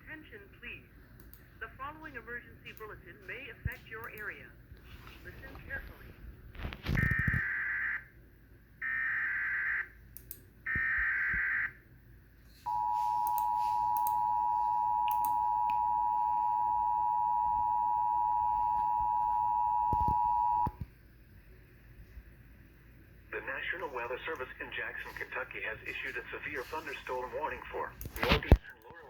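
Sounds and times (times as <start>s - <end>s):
two-tone attention signal: 12.7s - 20.7s.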